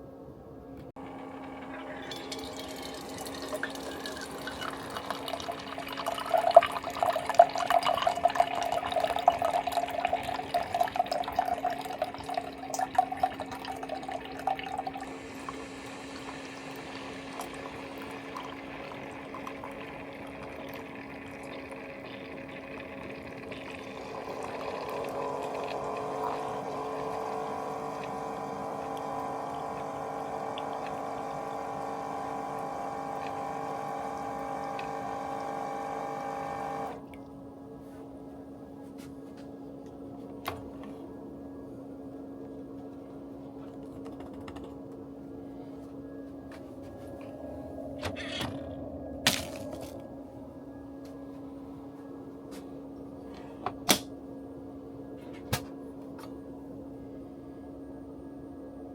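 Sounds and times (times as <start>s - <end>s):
steady low hum: 0.0s - 58.9s
water running: 1.0s - 37.2s
water spattering: 1.7s - 36.9s
faint rising tone: 45.4s - 53.3s.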